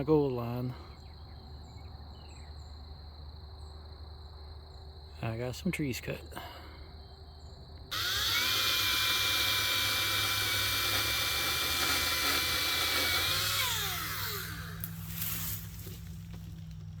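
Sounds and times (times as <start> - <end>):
chainsaw winding down: 7.9 - 16.1
electric chainsaw whining: 7.9 - 16.5.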